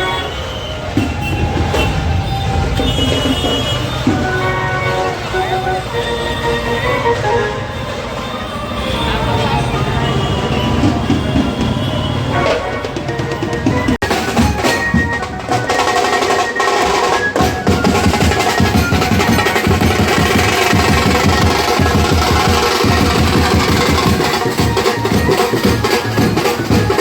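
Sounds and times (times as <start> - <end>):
procession drumming: 10.1 - 27.0.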